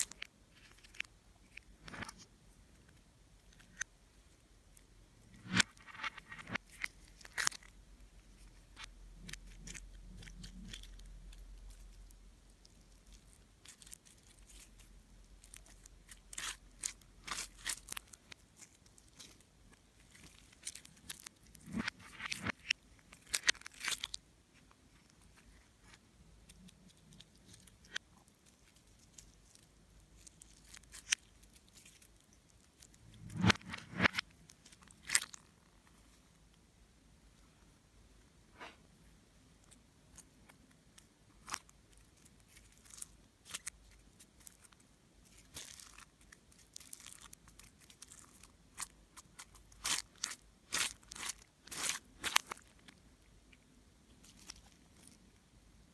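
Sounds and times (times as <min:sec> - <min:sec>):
slime crackling and popping: 0:08.8 - 0:24.2, 0:26.5 - 0:35.6, 0:41.0 - 0:53.0.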